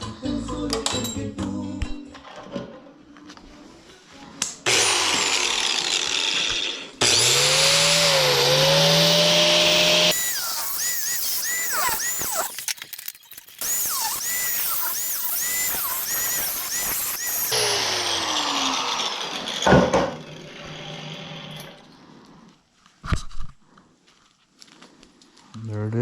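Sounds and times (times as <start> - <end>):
electric grinder cutting steel: 4.7 - 21.8
grinder winding down: 4.7 - 22.0.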